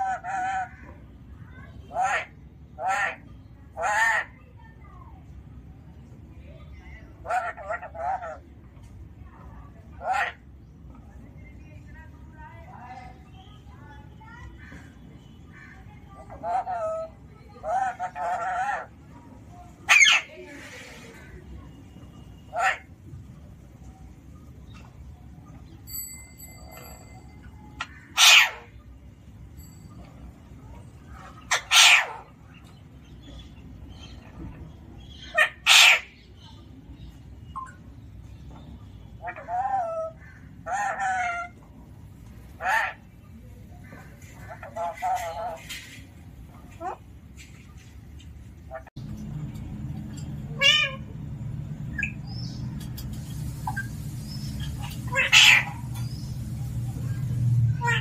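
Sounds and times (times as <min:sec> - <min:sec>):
parakeet harsh calls: 0:01.5 - 0:04.4, 0:07.2 - 0:08.4, 0:09.9 - 0:10.4, 0:14.6 - 0:18.9, 0:19.8 - 0:20.4, 0:22.4 - 0:23.0, 0:27.7 - 0:28.8, 0:31.3 - 0:32.4, 0:35.0 - 0:36.4, 0:39.2 - 0:41.6, 0:42.6 - 0:43.2, 0:50.5 - 0:51.1, 0:53.6 - 0:56.4, 0:57.7 - 0:58.0
parrot call: 0:19.9 - 0:20.4, 0:22.5 - 0:22.9, 0:27.7 - 0:28.8, 0:31.4 - 0:32.4, 0:35.1 - 0:36.2, 0:50.5 - 0:51.1, 0:53.6 - 0:56.2
parrot chirps: 0:35.1 - 0:36.2, 0:51.9 - 0:56.4.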